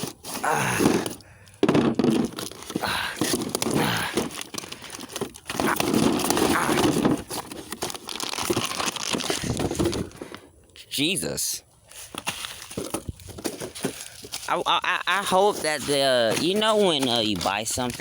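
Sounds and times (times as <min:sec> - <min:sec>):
plastic packaging crinkling and tearing: 0:00.0 - 0:01.2, 0:02.0 - 0:10.4, 0:11.9 - 0:18.0.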